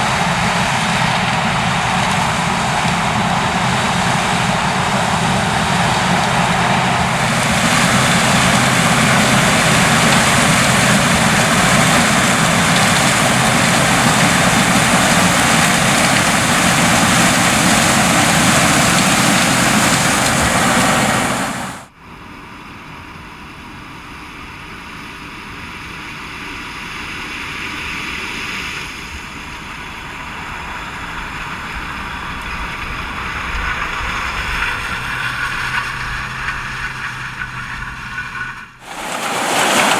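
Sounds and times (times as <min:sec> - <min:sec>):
combine harvester running: 0:00.0 - 0:21.9, 0:38.8 - 0:39.9.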